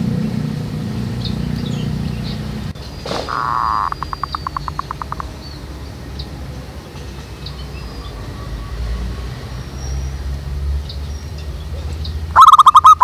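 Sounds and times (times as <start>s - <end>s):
high bird chirps: 1.2s - 6.4s, 10.9s - 13.0s.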